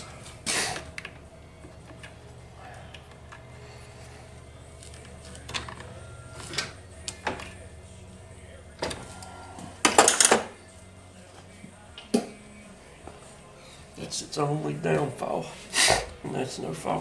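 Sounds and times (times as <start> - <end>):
rasping rattle: 0.0 - 10.8
steady low hum: 0.0 - 17.0.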